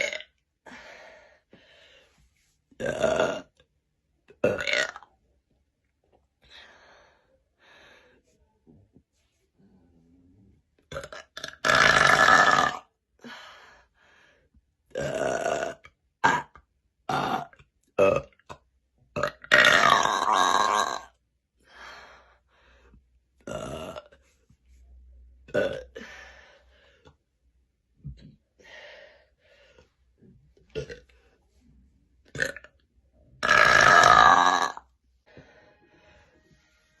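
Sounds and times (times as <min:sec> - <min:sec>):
woman burping loudly: 0:00.0 - 0:00.3, 0:02.8 - 0:03.6, 0:04.3 - 0:05.1, 0:10.9 - 0:12.9, 0:14.9 - 0:18.6, 0:19.2 - 0:21.2, 0:23.4 - 0:24.1, 0:25.5 - 0:26.0, 0:30.8 - 0:31.1, 0:32.3 - 0:32.8, 0:33.4 - 0:34.9
short breaths: 0:00.7 - 0:02.4.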